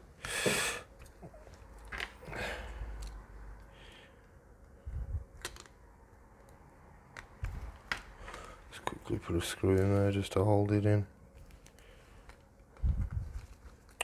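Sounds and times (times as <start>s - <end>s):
light clicks and taps of parts: 2.9s - 4.8s.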